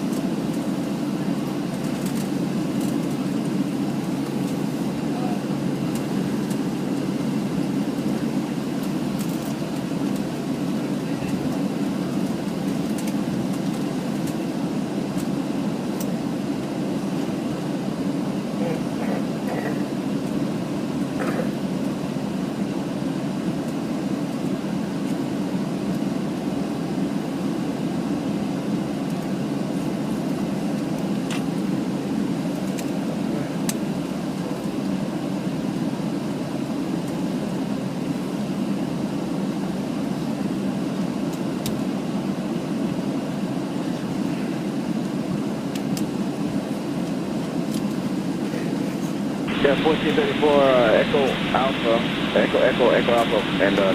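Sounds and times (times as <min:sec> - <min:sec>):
airplane cabin rumble: 0:00.0 - 0:22.6, 0:45.7 - 0:53.9.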